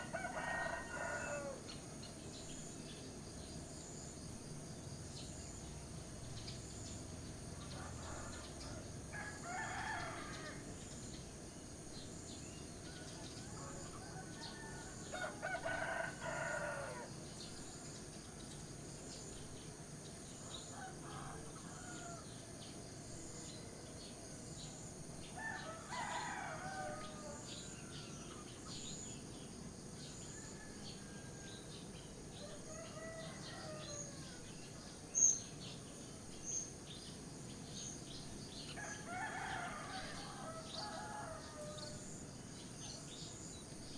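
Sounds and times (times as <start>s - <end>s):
roosters crowing: 0.0s - 1.6s, 7.8s - 10.7s, 13.4s - 17.1s, 20.7s - 22.3s, 25.3s - 28.1s, 32.4s - 34.5s, 38.8s - 42.1s.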